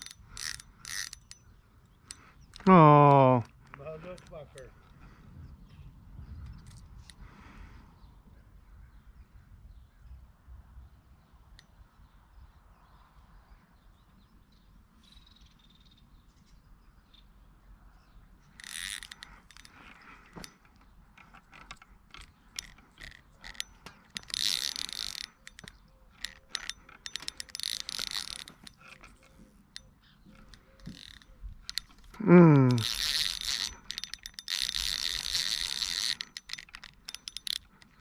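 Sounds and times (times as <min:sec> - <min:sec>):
fishing reel clicking: 0:00.0 - 0:01.5, 0:02.1 - 0:04.7, 0:18.5 - 0:38.0.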